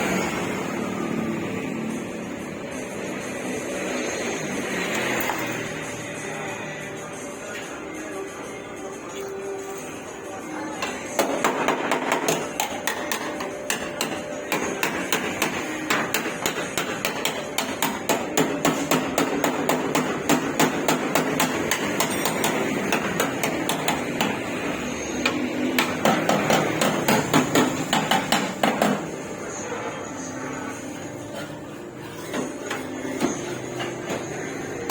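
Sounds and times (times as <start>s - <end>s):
hammer beating sheet metal: 10.8s - 29.3s.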